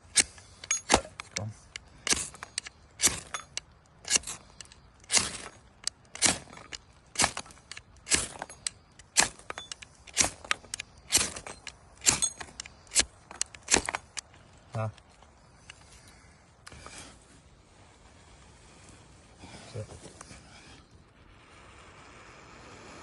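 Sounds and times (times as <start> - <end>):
steel striker rasping for sparks: 0.0 - 14.2.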